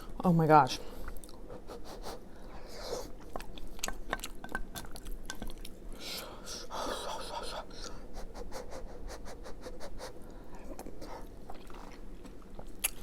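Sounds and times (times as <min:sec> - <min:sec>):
person chewing: 0:02.5 - 0:06.0, 0:10.3 - 0:13.0.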